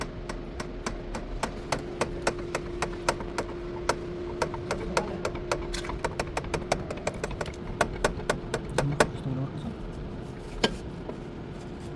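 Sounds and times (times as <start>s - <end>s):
sharp evenly spaced knocks: 0.0s - 9.2s
faint steady hum: 0.0s - 11.9s.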